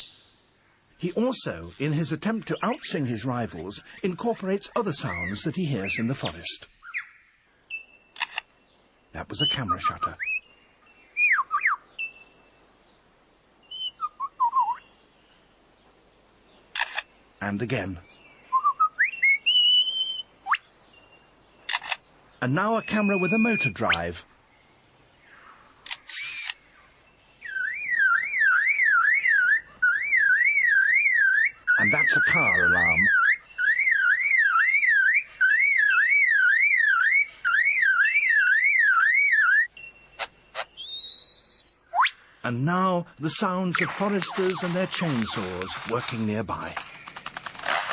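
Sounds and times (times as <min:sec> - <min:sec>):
lyrebird whistling: 0:11.2 - 0:12.2, 0:13.7 - 0:14.9, 0:18.5 - 0:20.6, 0:22.6 - 0:24.1, 0:27.4 - 0:42.2
bird mimicking car alarm: 0:27.4 - 0:42.2.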